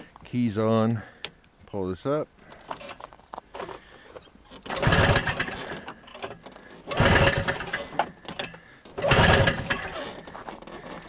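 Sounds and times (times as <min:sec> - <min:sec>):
engine pull-start chugging: 0:04.5 - 0:11.0.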